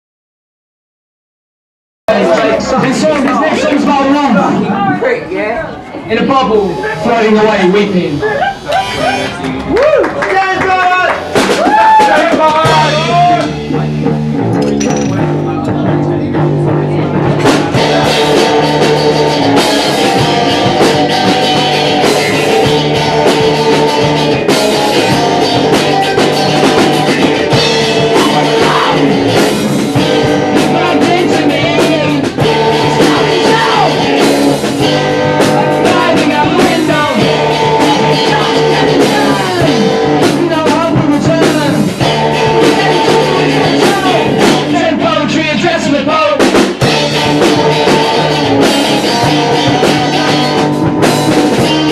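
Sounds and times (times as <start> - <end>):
rock band playing live: 2.1 - 51.9
person singing: 25.0 - 50.8.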